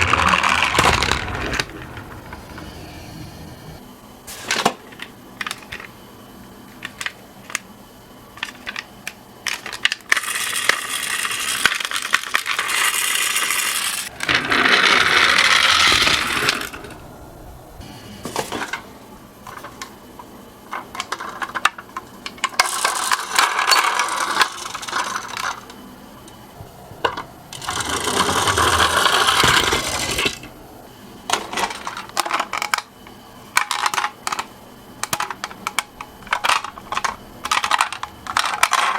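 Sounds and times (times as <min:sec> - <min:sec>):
toy cars rattling down a slope: 0:00.0 - 0:02.7, 0:09.5 - 0:16.9, 0:22.4 - 0:25.7, 0:27.6 - 0:30.5, 0:35.1 - 0:38.9.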